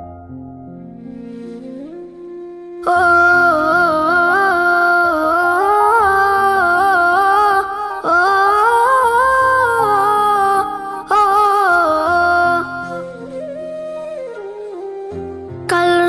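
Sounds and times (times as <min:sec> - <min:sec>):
hummed vocal melody: 0:02.8 - 0:13.7.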